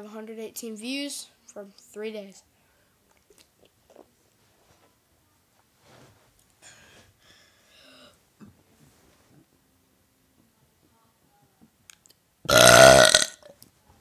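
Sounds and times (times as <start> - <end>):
faint hissy breaths: 1.3 - 3.1, 5.6 - 9.8.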